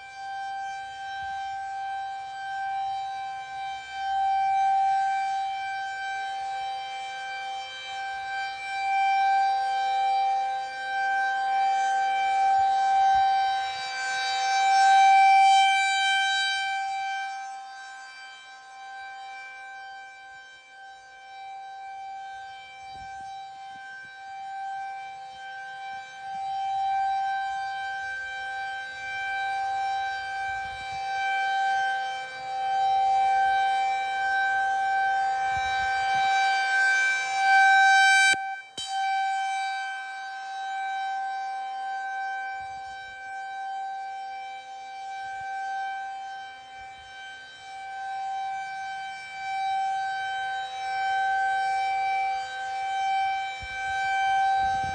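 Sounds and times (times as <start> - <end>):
rotating warning siren: 0.0 - 54.9.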